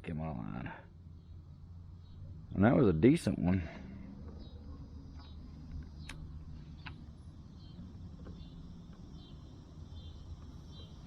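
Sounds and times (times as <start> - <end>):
low steady rumble: 0.0 - 11.0
sharp clicks: 5.2 - 7.0.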